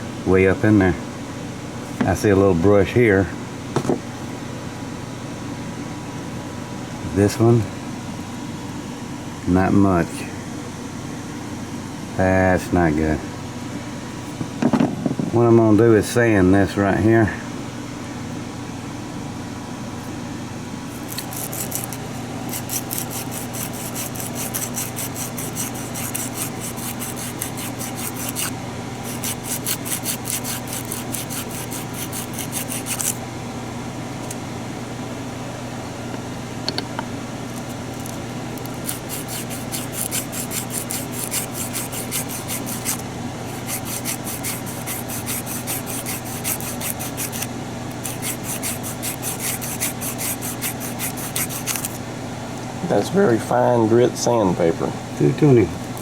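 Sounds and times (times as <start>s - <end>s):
steady low hum: 0.0s - 56.0s
sandpaper rubbing by hand: 20.9s - 33.2s, 38.6s - 52.0s.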